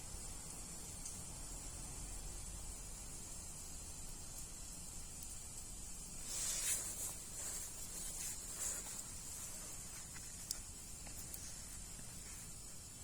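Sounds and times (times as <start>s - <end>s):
wood fire hissing: 0.0s - 13.0s
fire crackling pops: 3.1s - 13.0s.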